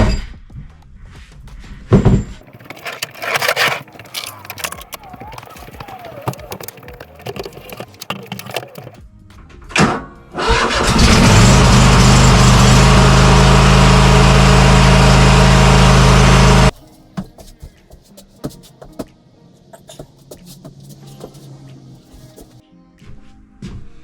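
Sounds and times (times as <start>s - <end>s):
motor running with low hum: 11.0s - 16.7s.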